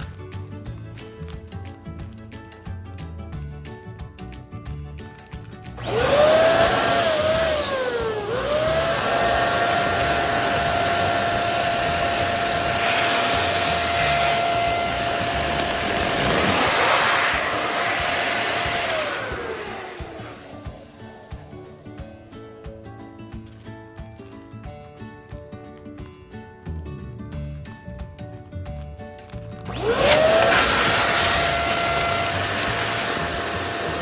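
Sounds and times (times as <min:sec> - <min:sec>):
electric balloon pump motor whine: 0:05.8 - 0:22.1, 0:29.6 - 0:34.0
rush of air: 0:12.5 - 0:22.0.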